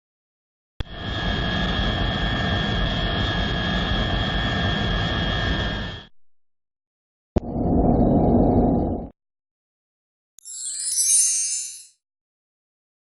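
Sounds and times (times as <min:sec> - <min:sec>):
high steady whining tones: 0:00.8 - 0:06.1
jet-like spaceship rumble: 0:00.8 - 0:06.1, 0:07.4 - 0:09.1.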